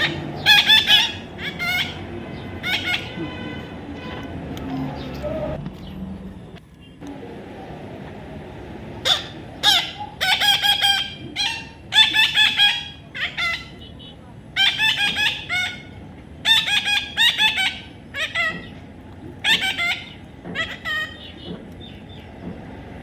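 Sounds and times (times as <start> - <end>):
parrot squawking: 0.0 - 3.4, 9.0 - 14.0, 14.6 - 18.8, 19.4 - 21.5.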